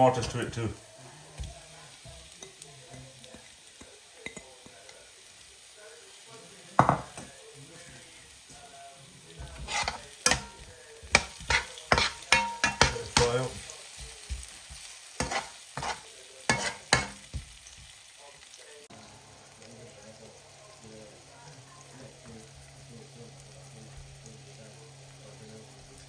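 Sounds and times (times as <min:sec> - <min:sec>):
low frying sizzle: 0:00.0 - 0:26.0
utensil scraping a pan: 0:09.4 - 0:17.4.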